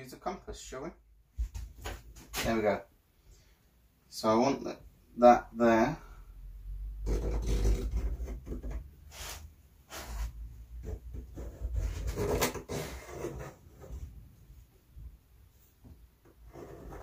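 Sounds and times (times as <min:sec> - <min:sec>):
pencil scraping on wood: 0:07.0 - 0:14.0, 0:16.3 - 0:17.0.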